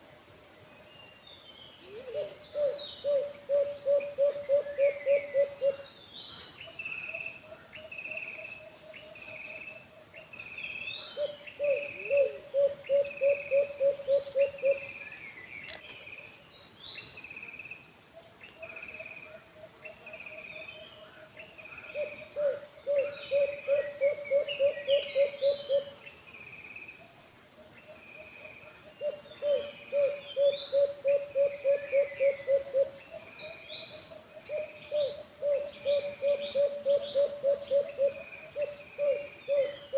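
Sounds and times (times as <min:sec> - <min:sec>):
dove cooing: 0:01.9 - 0:05.9, 0:11.2 - 0:14.9, 0:21.8 - 0:26.0, 0:29.0 - 0:33.0, 0:34.4 - 0:39.9
bird chirps: 0:29.0 - 0:39.9.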